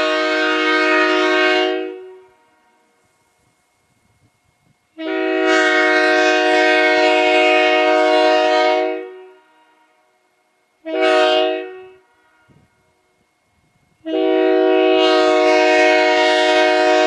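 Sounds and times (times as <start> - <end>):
locomotive air horn blasts: 0.0 - 3.0, 4.9 - 10.1, 10.8 - 12.8, 14.0 - 17.0.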